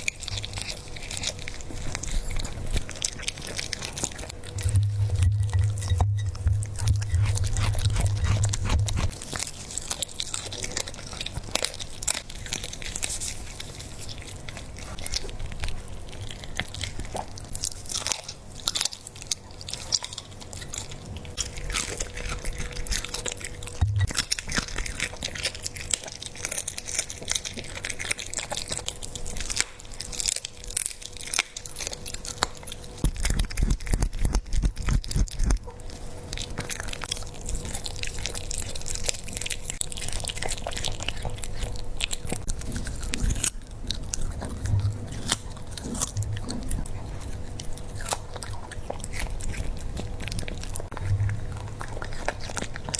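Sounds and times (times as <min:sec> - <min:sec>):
dog chewing wetly: 0:00.0 - 0:52.9
bones crunching: 0:03.7 - 0:09.4, 0:33.0 - 0:36.8.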